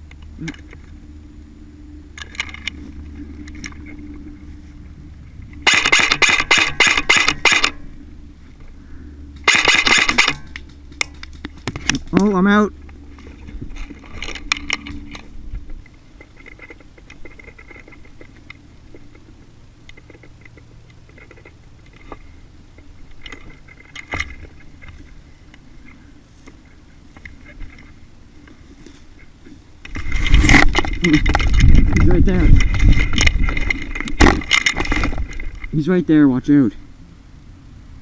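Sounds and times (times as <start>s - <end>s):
sharp clicks and knocks: 5.4s - 7.8s, 9.4s - 19.2s, 29.8s - 35.8s
faint rustling: 12.8s - 35.9s.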